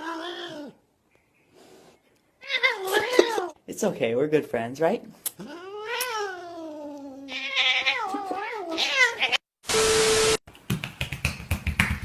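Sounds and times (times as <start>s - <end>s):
cat meowing: 5.4s - 9.5s.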